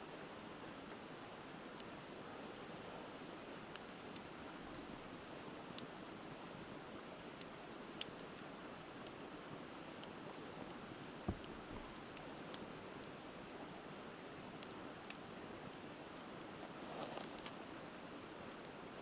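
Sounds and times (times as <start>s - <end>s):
wood fire crackling: 0.1s - 19.0s
low thump: 11.3s - 11.9s.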